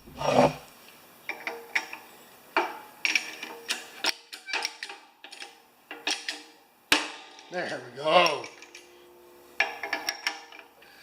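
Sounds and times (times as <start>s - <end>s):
metallic clicks and knocks: 2.6s - 7.5s, 9.6s - 10.7s
faint metallic ring: 7.5s - 10.8s.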